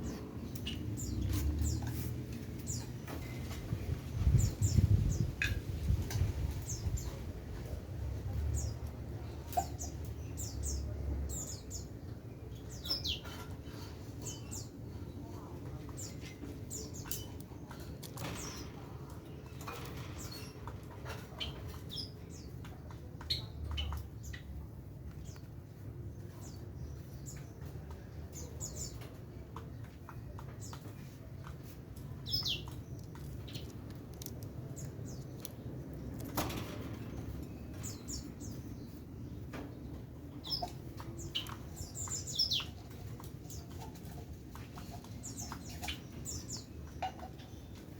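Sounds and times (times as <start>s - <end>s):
birds chirping: 0.0s - 47.9s.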